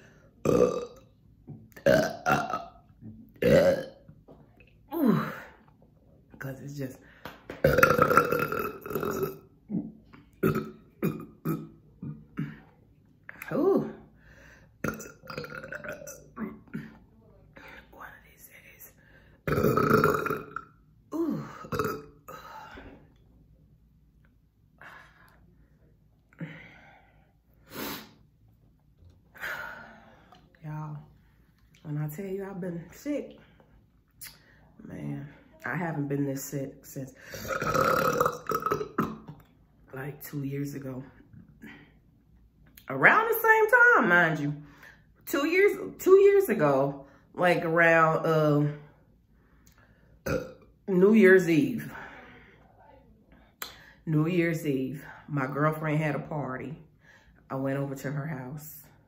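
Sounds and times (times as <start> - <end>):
woman burping loudly: 0.4 - 1.1, 1.7 - 4.1, 4.9 - 5.7, 7.6 - 12.7, 14.8 - 17.0, 19.4 - 23.0, 37.2 - 39.5, 50.2 - 50.7
woman breathing noisily: 24.8 - 28.2.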